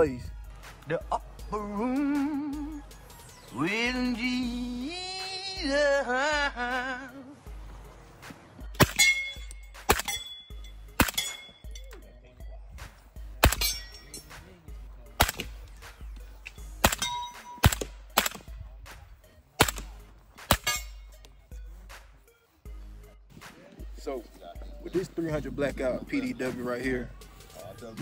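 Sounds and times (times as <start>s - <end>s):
suppressed gunshots: 8.7s - 10.3s, 11.0s - 11.4s, 13.4s - 13.9s, 15.2s - 16.0s, 16.7s - 18.8s, 19.6s - 20.9s.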